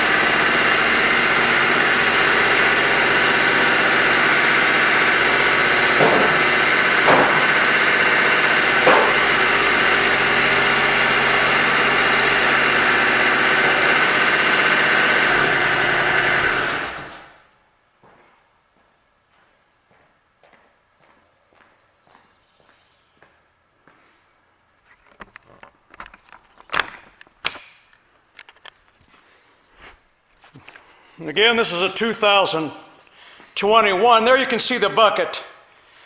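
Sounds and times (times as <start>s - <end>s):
diesel engine running: 0.0s - 17.3s
short knocks: 4.2s - 9.8s.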